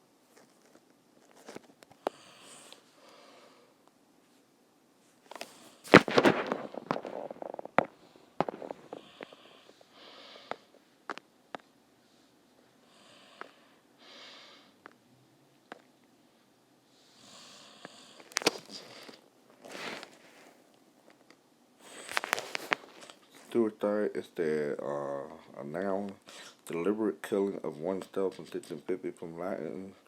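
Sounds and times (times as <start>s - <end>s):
person breathing and sniffing: 2.0s - 3.8s, 5.3s - 10.8s, 12.0s - 14.8s, 16.9s - 20.6s, 21.8s - 23.4s, 26.3s - 26.6s.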